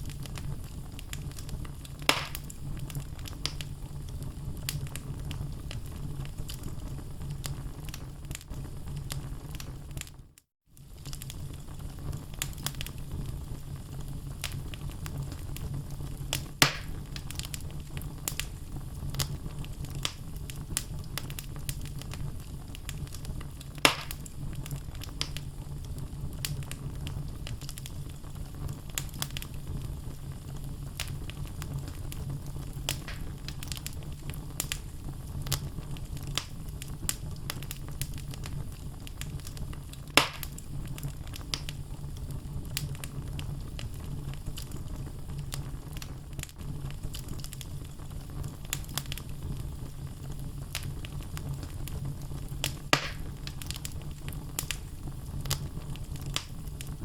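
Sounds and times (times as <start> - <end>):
loud fire pops: 0.0 - 10.2, 10.8 - 57.0
fire flames rumbling: 0.0 - 57.0
logs crackling: 0.1 - 3.7, 16.3 - 22.2, 22.8 - 25.4, 30.9 - 41.7, 52.6 - 57.0.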